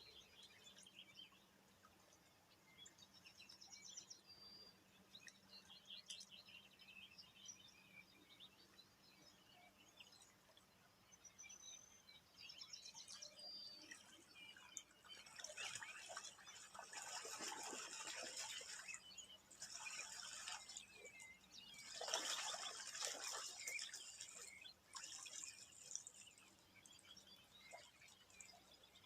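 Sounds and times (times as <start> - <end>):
small birds chirping: 0.0 - 29.0
water splashing: 14.0 - 26.5.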